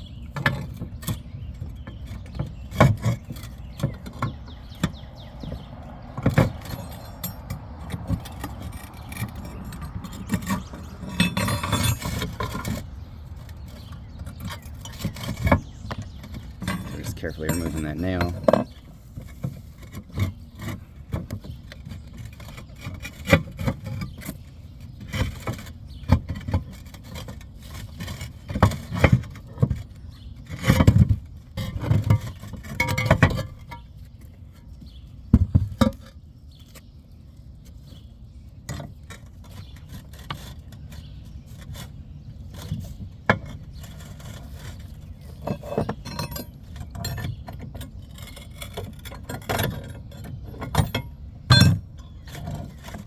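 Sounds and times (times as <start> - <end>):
roof tiles clinking and knocking: 0.3 - 24.4, 42.5 - 53.0.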